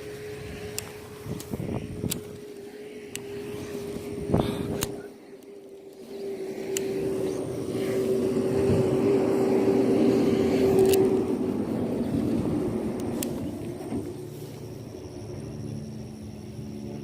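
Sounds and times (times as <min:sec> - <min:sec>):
engine drone: 0:00.0 - 0:17.0
sharp clicks: 0:00.7 - 0:03.6, 0:04.7 - 0:06.1, 0:06.7 - 0:07.4.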